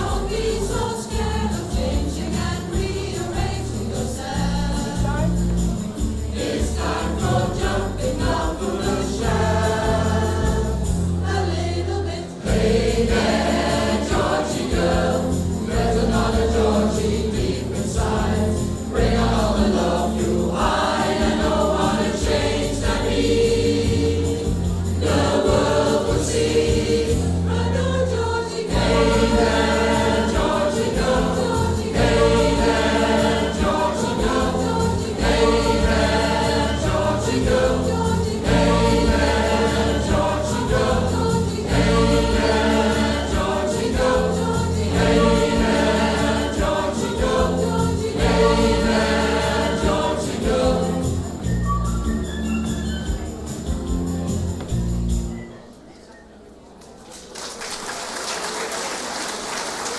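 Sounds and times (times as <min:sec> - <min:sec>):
choir singing with instruments: 0:00.0 - 0:55.8
steady bass line: 0:28.7 - 0:55.3.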